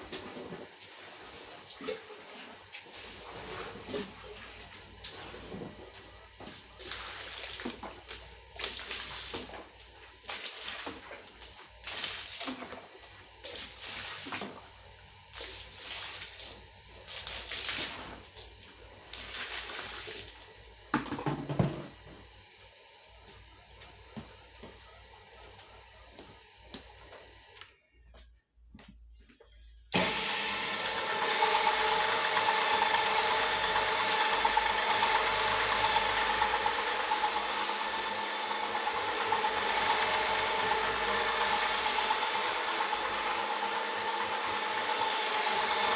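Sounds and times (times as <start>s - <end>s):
water splashing and sloshing: 0.0s - 21.7s
floor polisher motor humming: 21.0s - 27.7s, 29.9s - 45.9s.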